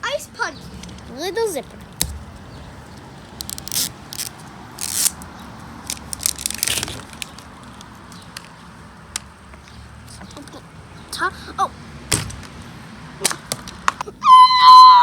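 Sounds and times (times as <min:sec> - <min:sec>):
plastic packaging crinkling and tearing: 0:03.4 - 0:05.2, 0:05.9 - 0:07.8.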